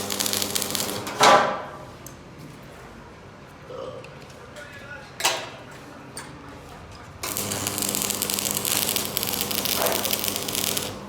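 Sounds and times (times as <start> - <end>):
arc welding crackling hiss: 0.0 - 1.2, 7.2 - 11.0
low electrical hum: 0.0 - 11.0.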